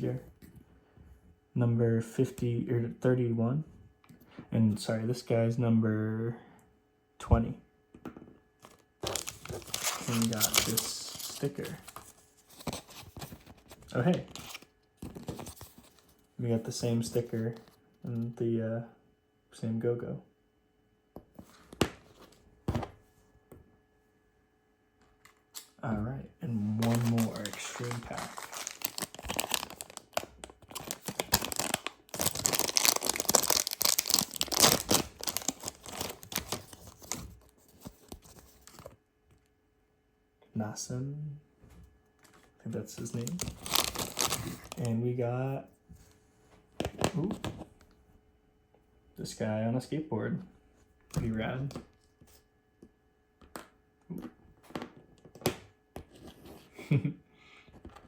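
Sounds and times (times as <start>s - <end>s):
plastic wrapper crinkling: 8.6s - 13.0s, 26.7s - 38.9s, 43.0s - 44.9s.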